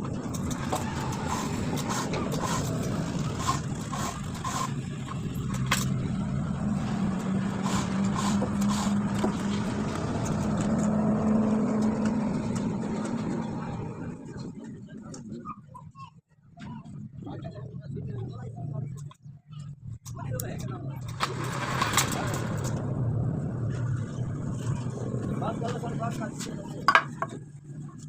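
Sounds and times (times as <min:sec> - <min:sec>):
motor running: 0:00.6 - 0:10.9.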